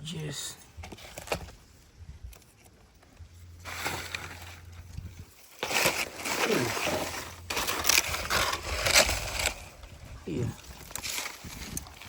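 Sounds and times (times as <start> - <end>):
digging through wet leaves: 3.6 - 12.0.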